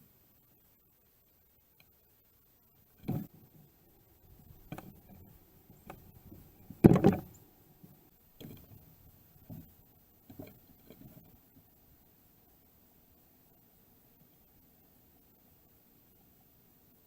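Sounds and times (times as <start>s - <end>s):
birds knocking on feeder bowl: 3.0s - 3.7s, 4.3s - 11.4s.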